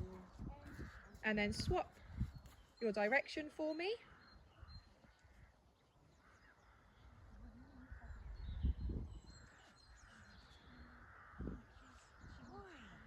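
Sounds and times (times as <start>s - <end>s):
harsh caw-like calls: 0.6s - 1.2s, 9.5s - 13.0s
faint bird calls: 4.0s - 13.0s.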